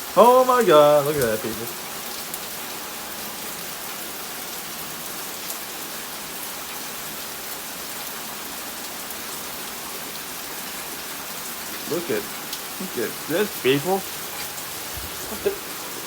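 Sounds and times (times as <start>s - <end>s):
heavy rain: 0.0s - 16.0s
raindrop ticks: 0.2s - 2.5s, 11.7s - 15.9s.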